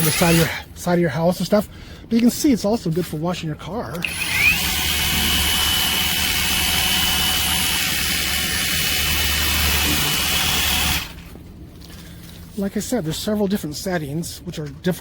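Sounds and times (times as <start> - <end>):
pressure washer pump whining: 0.0 - 0.6, 4.0 - 11.4.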